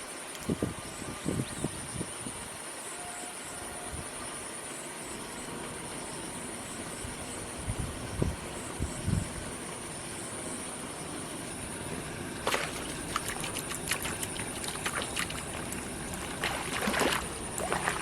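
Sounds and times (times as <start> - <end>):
steady background noise: 0.0 - 18.0
water splashing and sloshing: 11.2 - 18.0.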